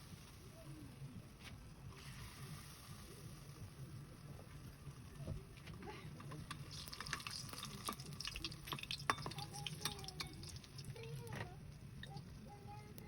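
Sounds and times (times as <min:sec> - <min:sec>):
small clicks and taps in pan: 0:05.6 - 0:13.0.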